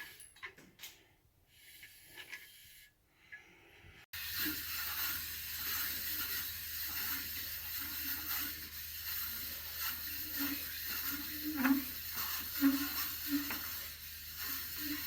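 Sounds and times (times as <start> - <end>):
lapping tool strokes: 4.2 - 15.0
steady hiss: 4.2 - 15.0.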